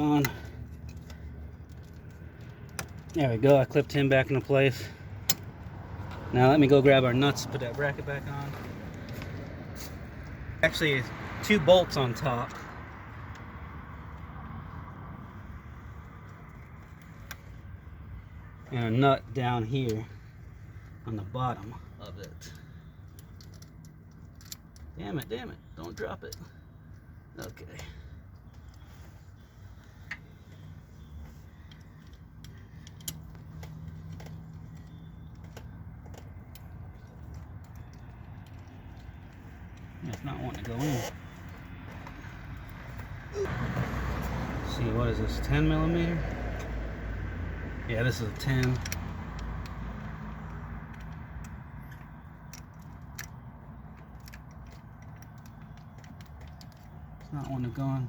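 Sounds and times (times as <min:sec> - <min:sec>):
small metal parts clicking: 0:22.1 - 0:28.9, 0:30.0 - 0:41.8, 0:48.0 - 0:57.8.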